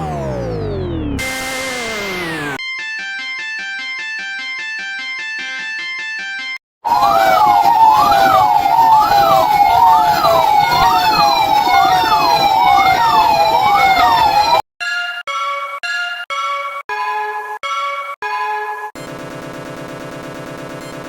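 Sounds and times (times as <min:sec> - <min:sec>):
wailing siren tone: 0:00.0 - 0:02.6, 0:06.9 - 0:14.6
noisy bed with falling tones: 0:00.0 - 0:05.2, 0:06.9 - 0:14.6.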